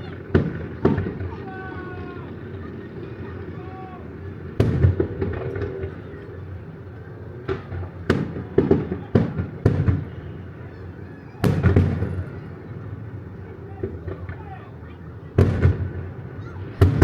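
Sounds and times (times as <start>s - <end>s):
fireworks bursting with sharp bangs: 0.0s - 1.6s, 4.0s - 10.6s, 11.4s - 13.2s, 13.8s - 17.0s.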